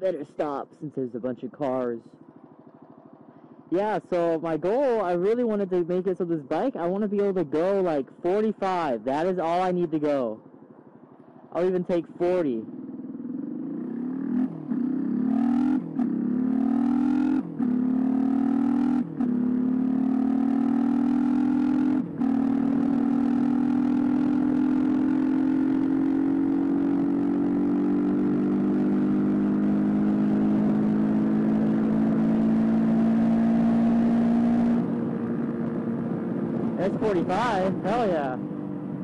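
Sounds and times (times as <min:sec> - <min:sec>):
motorcycle engine revving through gears: 0:12.3 - 0:39.0.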